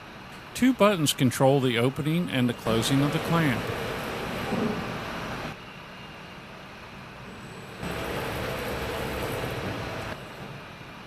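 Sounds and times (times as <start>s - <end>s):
electric drive mechanical hum: 0.0s - 5.6s, 7.8s - 10.8s.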